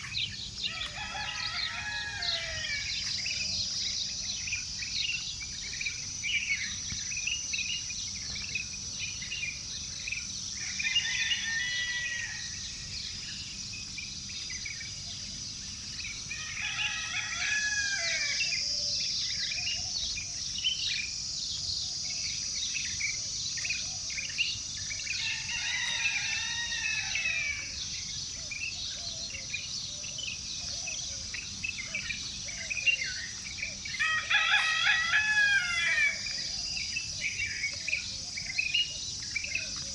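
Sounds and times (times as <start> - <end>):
high insect drone: 0.0 - 39.9
songbirds chirping: 0.0 - 39.9
rooster crowing: 0.7 - 3.0, 10.6 - 12.8, 16.3 - 18.5, 25.2 - 27.8, 33.9 - 36.4.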